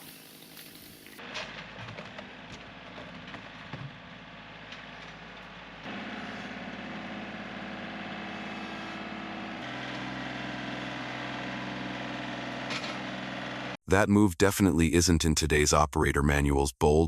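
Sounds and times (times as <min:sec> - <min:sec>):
heavy machine engine running: 0:01.2 - 0:13.8.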